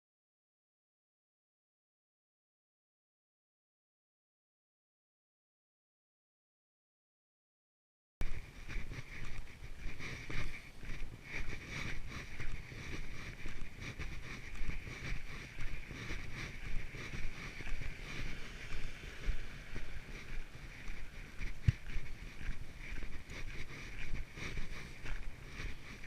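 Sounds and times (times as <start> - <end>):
footsteps on a trail: 8.2 - 26.0
wind rumbling on microphone: 8.2 - 26.0.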